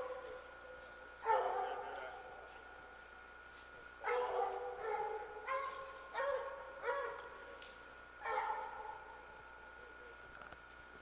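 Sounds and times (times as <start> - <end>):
dog barking: 1.2 - 2.1, 4.0 - 7.3, 8.2 - 9.0.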